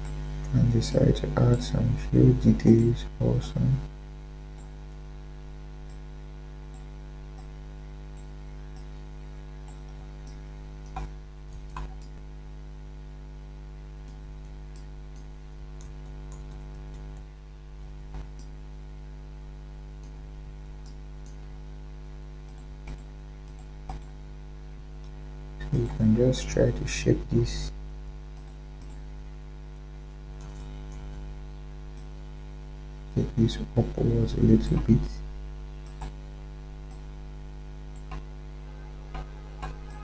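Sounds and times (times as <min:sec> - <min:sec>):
electrical mains hum: 0:00.0 - 0:40.0
computer mouse clicks: 0:06.7 - 0:09.0, 0:09.6 - 0:12.2, 0:14.0 - 0:17.3, 0:22.5 - 0:24.2, 0:28.4 - 0:29.1, 0:30.4 - 0:31.1, 0:35.8 - 0:36.2, 0:36.9 - 0:37.1, 0:37.9 - 0:38.3.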